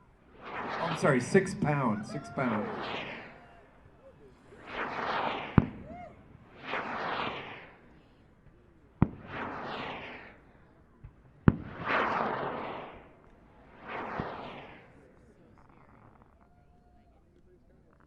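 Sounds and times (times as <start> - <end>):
skyrocket whoosh: 0.4 - 3.4
firework bangs: 0.4 - 3.6, 4.6 - 7.8, 9.0 - 10.4, 11.4 - 13.1, 13.8 - 14.9.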